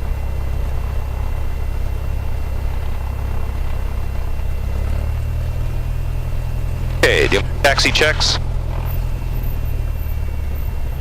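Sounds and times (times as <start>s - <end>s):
propeller aircraft engine droning: 0.0s - 11.0s.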